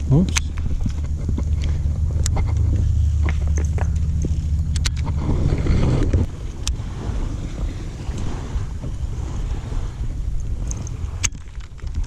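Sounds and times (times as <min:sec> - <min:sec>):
boat motor humming: 0:00.0 - 0:12.0
sharp clicks and knocks: 0:00.2 - 0:05.3.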